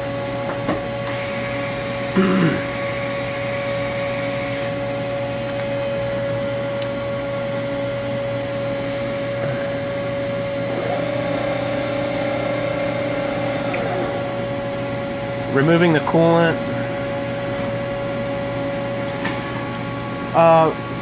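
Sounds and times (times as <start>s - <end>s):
milling machine hum: 0.0s - 21.0s
spindle high whine: 5.4s - 21.0s.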